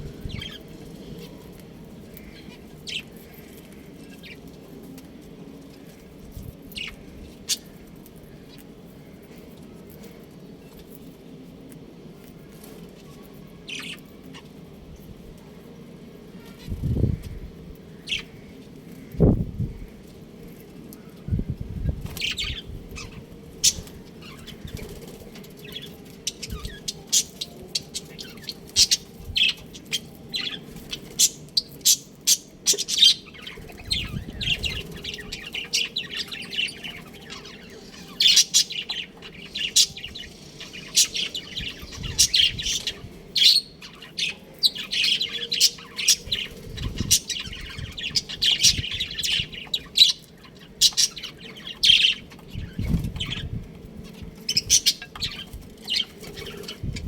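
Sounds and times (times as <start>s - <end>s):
budgerigars chirping: 26.3s - 53.5s.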